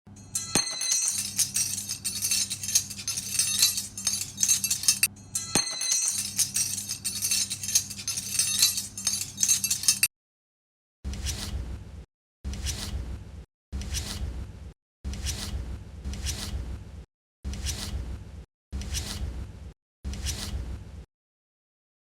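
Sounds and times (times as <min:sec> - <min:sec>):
small hard objects clinking: 0:00.2 - 0:10.1.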